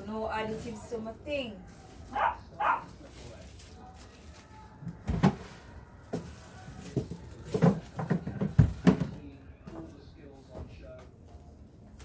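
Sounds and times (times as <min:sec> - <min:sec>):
knocks and thumps of groceries: 0:04.7 - 0:11.2.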